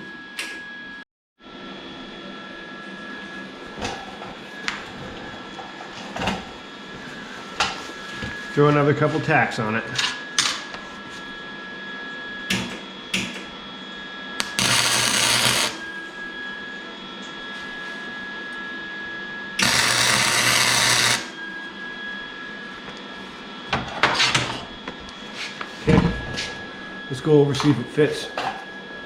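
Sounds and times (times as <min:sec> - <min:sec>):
arc welder crackling: 0:14.4 - 0:16.0, 0:19.6 - 0:21.4.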